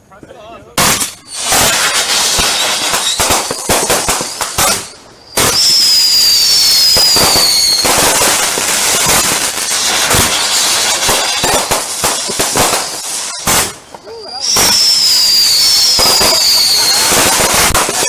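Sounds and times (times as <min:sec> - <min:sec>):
firework whistle: 0:00.8 - 0:18.0
fireworks cracking and banging: 0:00.8 - 0:18.0.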